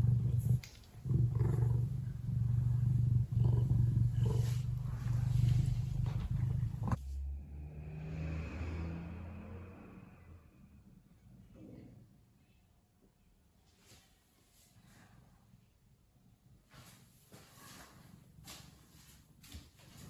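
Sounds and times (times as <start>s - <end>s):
cat purring: 0.0s - 7.0s
quiet low sound: 0.0s - 8.0s.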